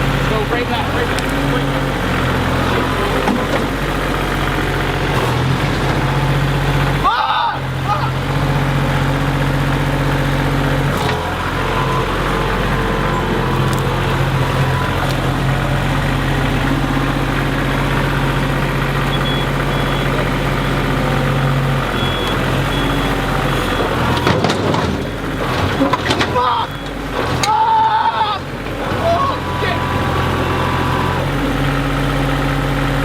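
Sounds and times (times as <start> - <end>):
vehicle engine running: 0.0 - 33.0
faint short high beeps: 19.1 - 20.1.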